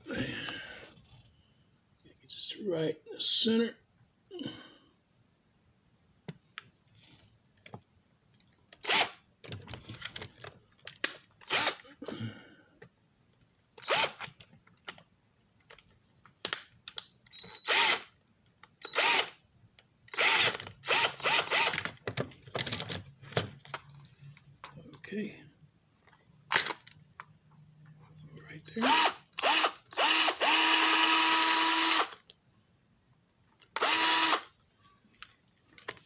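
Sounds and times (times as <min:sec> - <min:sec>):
cordless drill bursts: 0:08.8 - 0:09.2, 0:11.5 - 0:11.8, 0:13.8 - 0:14.3, 0:17.4 - 0:18.1, 0:18.8 - 0:19.4, 0:20.1 - 0:21.8, 0:28.8 - 0:32.2, 0:33.8 - 0:34.5.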